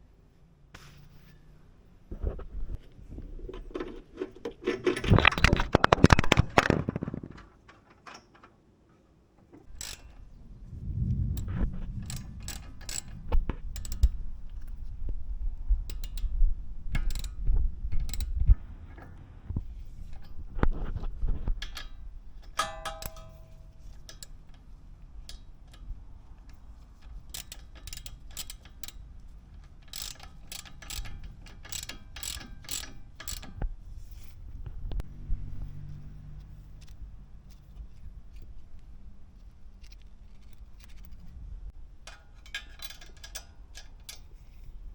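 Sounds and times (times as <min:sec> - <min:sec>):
ratchet wrench clicking: 0:09.7 - 0:10.3, 0:11.4 - 0:14.8, 0:15.9 - 0:18.4, 0:21.6 - 0:34.3, 0:42.1 - 0:44.6
metal clinks and knocks: 0:21.6 - 0:29.0, 0:42.0 - 0:44.6
short metallic ring: 0:22.6 - 0:24.3.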